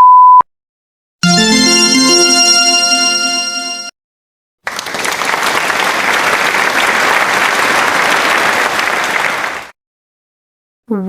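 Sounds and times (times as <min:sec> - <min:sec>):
crowd clapping: 0:04.6 - 0:09.8.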